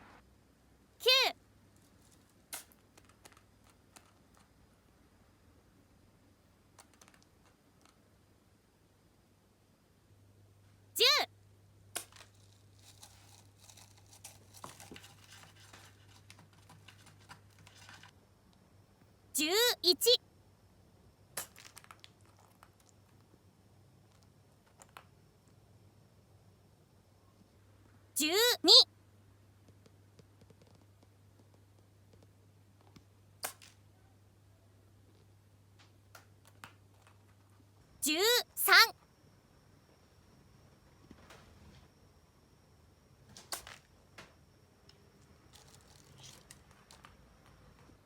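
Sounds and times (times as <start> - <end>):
small clicks and rustles: 1.7 - 4.8, 6.6 - 8.2, 12.0 - 18.6, 21.4 - 25.6, 29.6 - 33.8, 35.0 - 37.7, 43.3 - 48.0.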